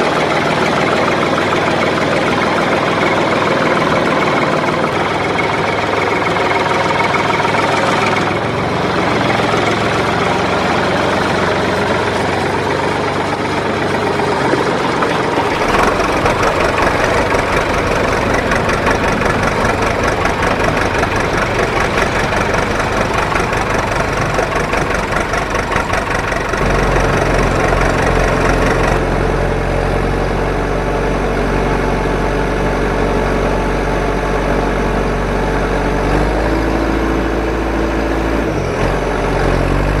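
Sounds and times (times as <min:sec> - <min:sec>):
engine running: 0:00.0 - 0:40.0.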